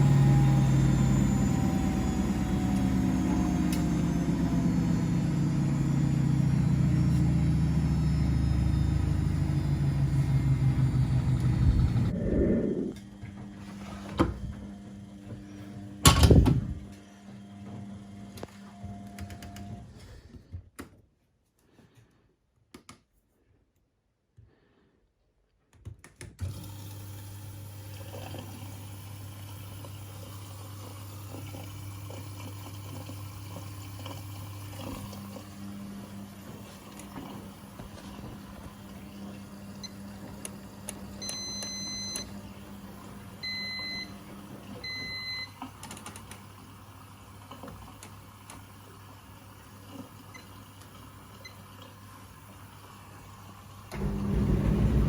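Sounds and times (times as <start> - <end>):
laundry machine motor hum: 0.0 - 19.8, 26.5 - 49.8, 50.6 - 55.0
water sounds: 9.2 - 13.0, 29.8 - 35.6.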